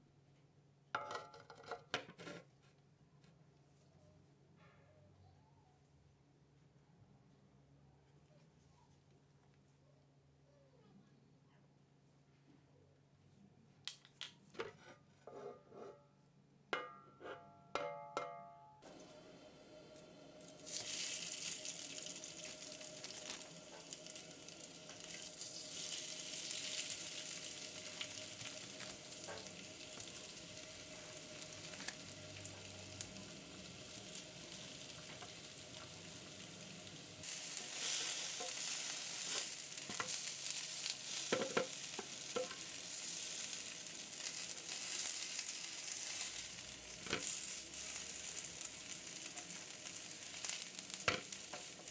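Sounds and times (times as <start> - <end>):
patties sizzling in a hot pan: 18.9 - 51.9.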